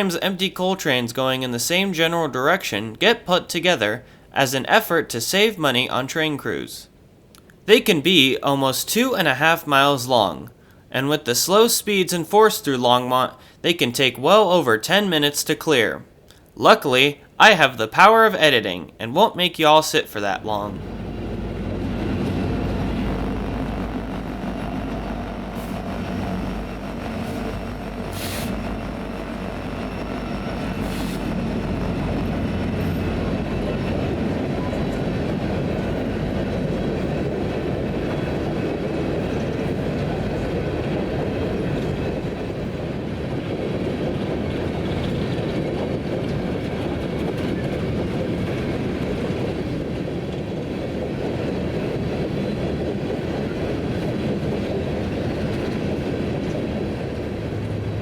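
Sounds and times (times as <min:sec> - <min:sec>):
train wheels rumbling on rail: 0:20.6 - 0:58.0.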